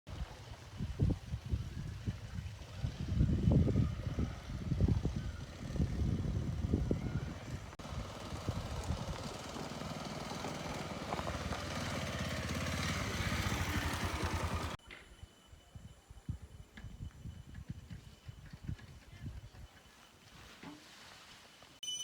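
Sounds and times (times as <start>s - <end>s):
small engine running: 0.2s - 14.8s
thin steady high tone: 14.8s - 18.4s, 21.1s - 22.0s.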